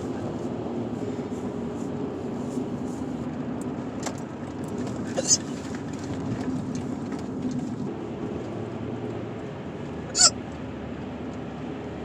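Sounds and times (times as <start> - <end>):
car cabin rumble: 0.0 - 10.6
woman hiccuping: 5.1 - 5.5, 10.1 - 10.4.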